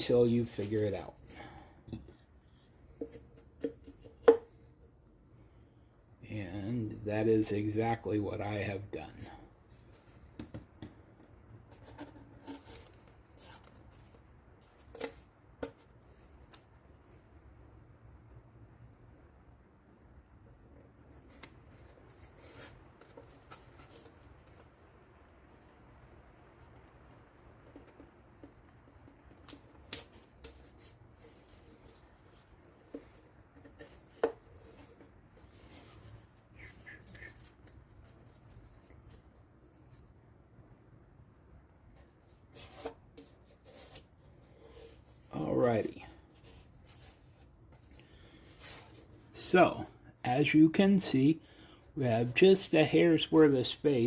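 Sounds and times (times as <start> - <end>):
faint rubbing and tapping: 26.6 - 40.1.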